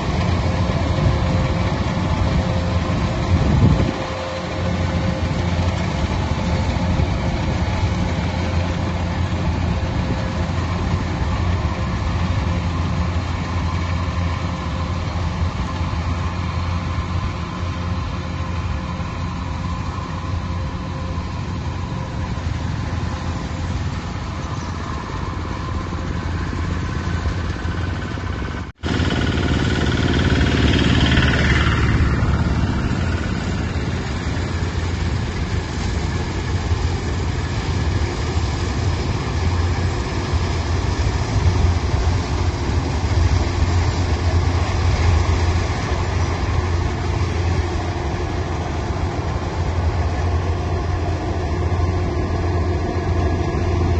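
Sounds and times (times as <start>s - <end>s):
machinery engine running: 0.0s - 53.9s.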